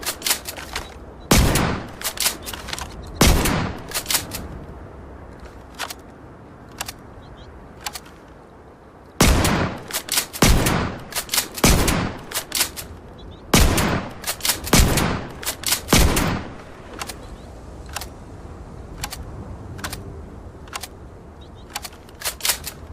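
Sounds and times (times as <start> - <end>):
shotgun blasts: 0.0 - 4.4, 9.2 - 12.9, 13.5 - 17.2
quiet sharp clicks: 5.3 - 7.1, 7.8 - 8.4, 15.4 - 18.2, 19.0 - 21.0, 21.6 - 22.9.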